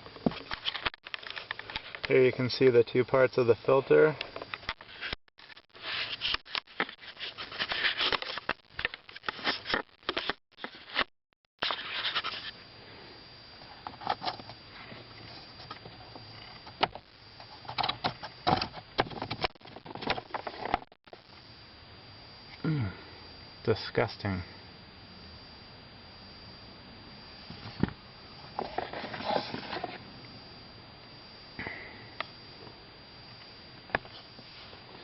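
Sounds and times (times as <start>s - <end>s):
filter handling scraping and rustling: 5.8s - 11.0s, 28.6s - 30.0s.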